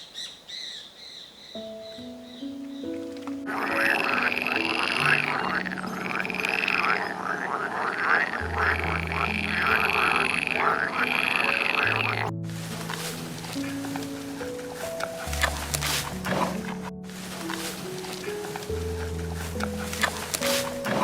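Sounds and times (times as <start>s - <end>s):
music with low held notes: 1.6s - 21.0s
chorus of animal calls: 3.4s - 12.3s.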